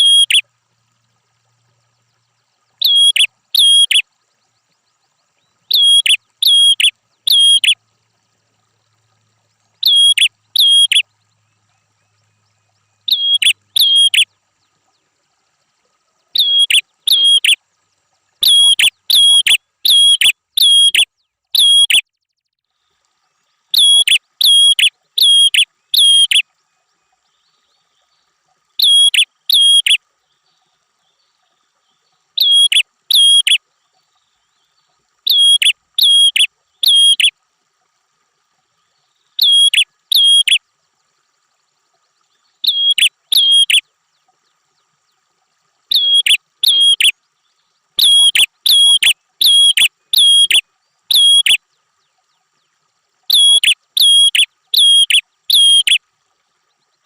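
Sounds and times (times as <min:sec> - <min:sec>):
bird chirping: 0:00.0 - 0:00.5, 0:01.7 - 0:07.8, 0:09.7 - 0:17.6, 0:18.4 - 0:22.6, 0:23.7 - 0:26.4, 0:28.8 - 0:37.3, 0:38.9 - 0:40.6, 0:41.9 - 0:45.3, 0:45.9 - 0:52.7, 0:53.3 - 0:56.0.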